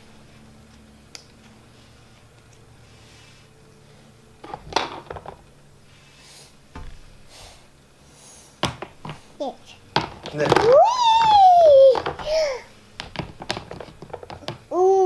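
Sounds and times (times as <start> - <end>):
plastic toys clattering: 4.4 - 5.4, 10.0 - 14.6.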